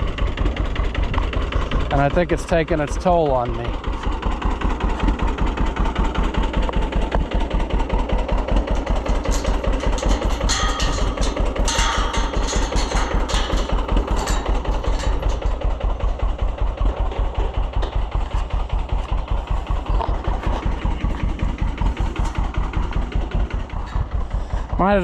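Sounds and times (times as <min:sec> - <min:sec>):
tractor engine chugging: 0:00.0 - 0:25.0
metallic clanks: 0:08.0 - 0:24.6.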